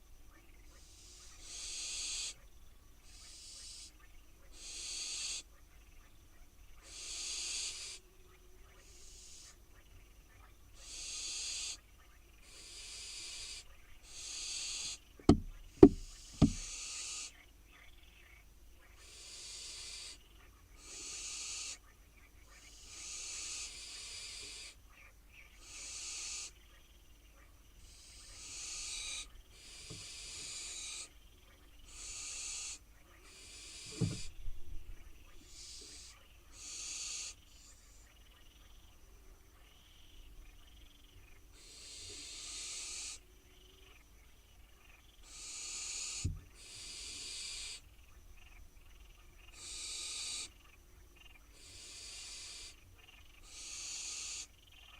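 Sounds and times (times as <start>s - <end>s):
owl chicks hissing: 0.8s - 2.4s, 3.1s - 3.9s, 4.5s - 5.4s, 6.8s - 8.0s, 8.8s - 9.6s, 10.8s - 11.8s, 12.4s - 15.0s, 15.6s - 17.3s, 19.0s - 20.2s, 20.8s - 21.8s, 22.7s - 24.8s, 25.6s - 26.6s, 27.8s - 31.1s, 31.8s - 34.4s, 35.4s - 38.0s, 41.6s - 43.2s, 45.2s - 47.9s, 49.5s - 50.6s, 51.6s - 52.8s, 53.4s - 54.5s
sharp knocks: 15.3s - 16.7s.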